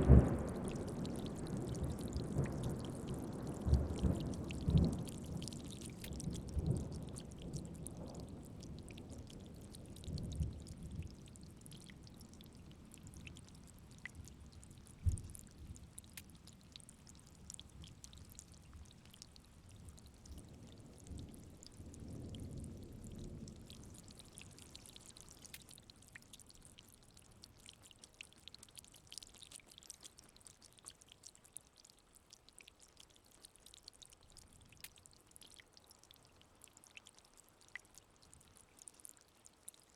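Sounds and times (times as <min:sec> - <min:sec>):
low rolling thunder: 0:00.0 - 0:05.5
dripping water: 0:00.0 - 0:39.9
faint steady rain: 0:00.0 - 0:39.9.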